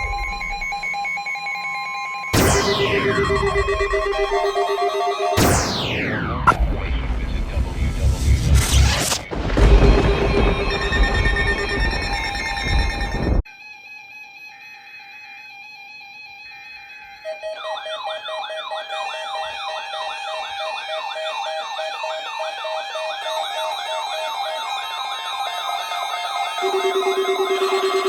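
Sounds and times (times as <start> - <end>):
rapid low-pitched beeping: 0.0 - 1.0, 2.4 - 13.4, 26.6 - 28.0
steady tone with slow beep: 0.0 - 1.1, 2.4 - 13.4, 26.6 - 28.0
fast-warbling siren-like alarm: 0.0 - 1.4, 2.3 - 13.4, 17.1 - 28.0.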